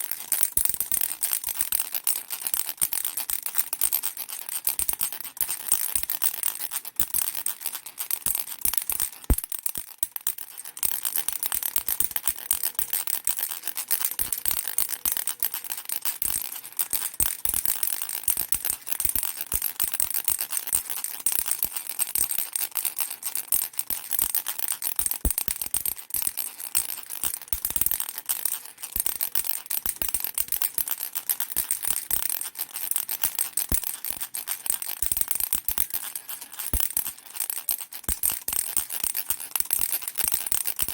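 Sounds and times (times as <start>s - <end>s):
baby rattle shaking: 0.0s - 40.9s.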